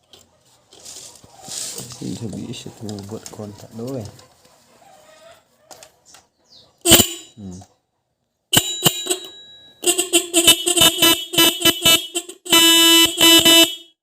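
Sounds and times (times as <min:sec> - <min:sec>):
motorcycle horn honking: 0:06.9 - 0:07.6, 0:08.5 - 0:14.0.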